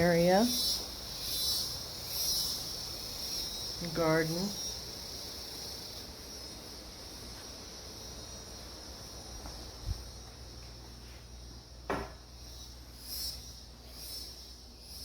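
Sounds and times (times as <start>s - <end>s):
insects chirring: 0.0s - 15.0s
low thump: 11.9s - 12.2s
sharp knock: 11.9s - 12.2s.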